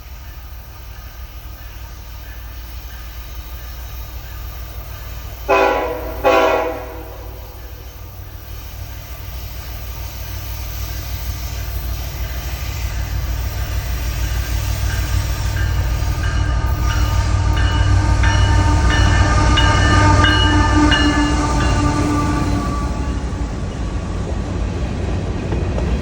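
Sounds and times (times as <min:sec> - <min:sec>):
train rumbling past: 0:00.0 - 0:26.0
locomotive bell ringing: 0:11.6 - 0:24.1.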